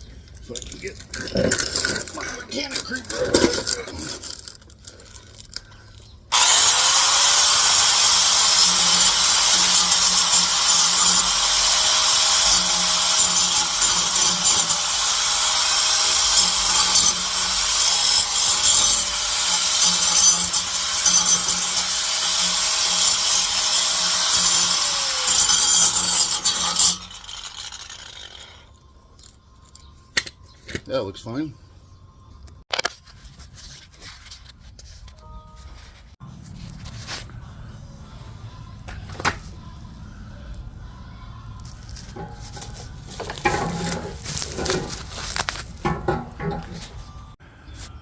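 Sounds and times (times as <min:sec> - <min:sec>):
abrasive tool rasping on metal: 0:06.3 - 0:28.6
power tool motor whine: 0:06.3 - 0:28.6.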